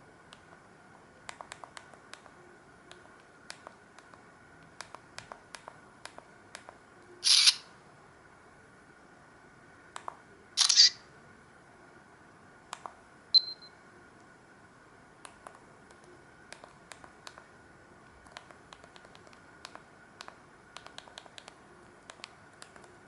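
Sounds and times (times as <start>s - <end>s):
mobile phone keys clicking: 18.2s - 23.0s.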